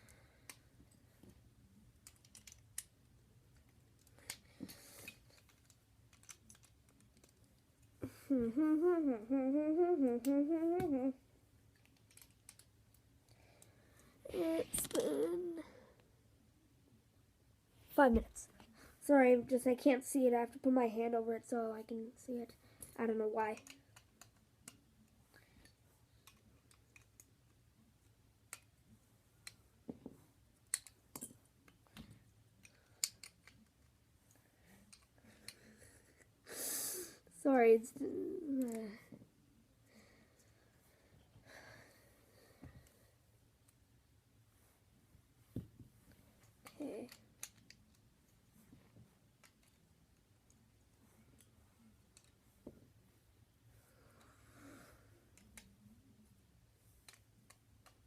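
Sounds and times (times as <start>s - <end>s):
plastic toy pieces clicking: 2.0s - 2.9s, 3.5s - 7.4s, 11.7s - 12.7s, 23.5s - 24.8s, 26.2s - 27.4s, 30.7s - 33.7s, 46.6s - 48.0s
boy humming: 8.0s - 11.2s, 14.3s - 15.8s, 38.0s - 39.1s.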